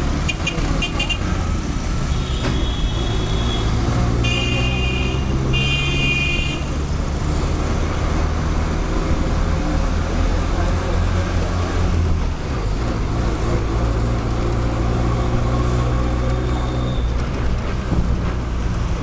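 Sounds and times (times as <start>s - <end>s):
bus engine rumble: 0.0s - 19.0s
street traffic: 0.0s - 19.0s
vehicle horns honking: 0.2s - 6.9s.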